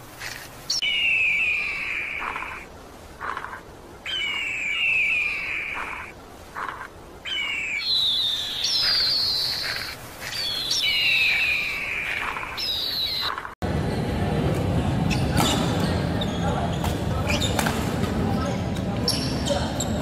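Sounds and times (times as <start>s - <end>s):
songbird singing: 0.7s - 13.6s.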